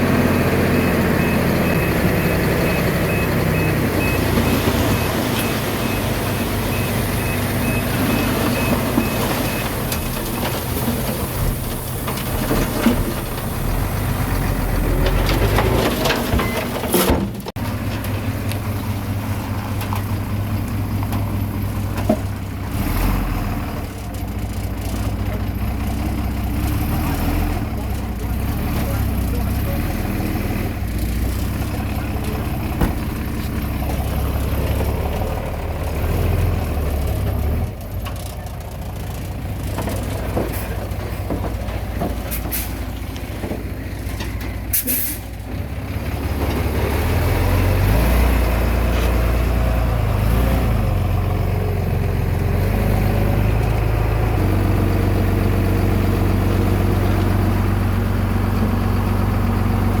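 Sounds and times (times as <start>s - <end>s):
heavy diesel engine running: 0.0s - 60.0s
short air hisses: 44.7s - 45.3s.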